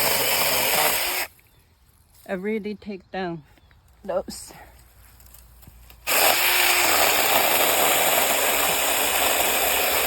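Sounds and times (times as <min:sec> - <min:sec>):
mini chainsaw electric whirr: 0:00.0 - 0:01.3, 0:05.9 - 0:10.0.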